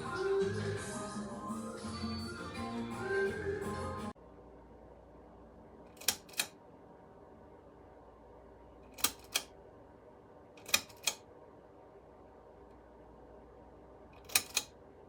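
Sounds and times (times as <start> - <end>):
sharp mechanical clicks: 5.9 - 6.6, 8.9 - 9.5, 10.6 - 11.2, 14.2 - 14.7.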